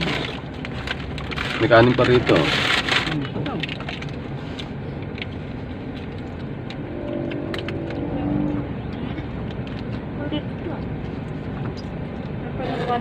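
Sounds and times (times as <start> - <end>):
engine sound: 2.5 - 12.5
car cabin rumble: 5.0 - 12.2.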